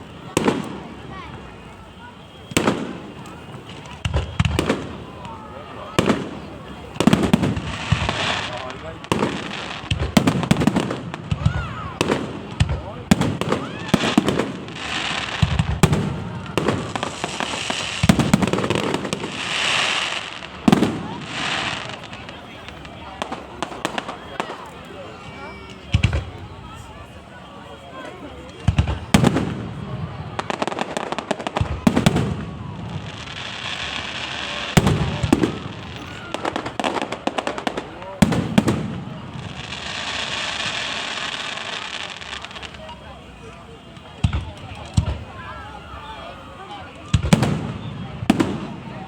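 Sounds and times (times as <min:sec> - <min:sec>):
fireworks crackling: 0:00.0 - 0:49.0
firework bang: 0:02.4 - 0:24.7, 0:28.6 - 0:43.0, 0:47.0 - 0:49.0
firework shells bursting with bangs: 0:05.9 - 0:22.2
firework hissing spray: 0:13.6 - 0:22.2.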